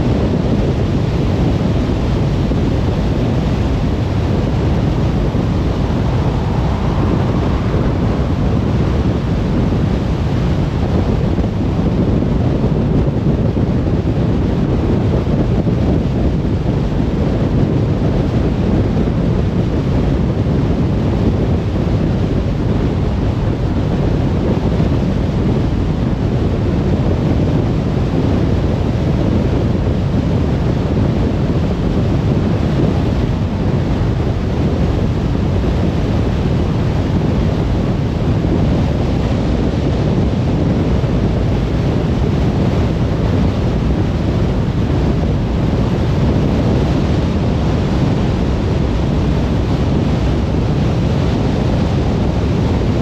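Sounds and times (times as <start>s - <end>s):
tyre and wind road noise: 0.0s - 53.0s.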